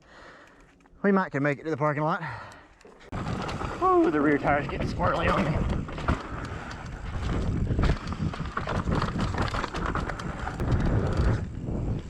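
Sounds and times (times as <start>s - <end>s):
bike rattling over bumps: 3.1s - 12.0s
bike tyre roar on dirt: 3.1s - 12.0s
wind buffeting microphone: 3.1s - 12.0s.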